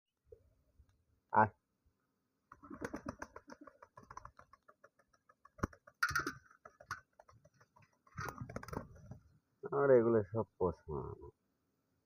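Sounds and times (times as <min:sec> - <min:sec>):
pigeon wing flurry: 0:02.5 - 0:09.3
pigeons tapping and scuffling: 0:02.5 - 0:09.3.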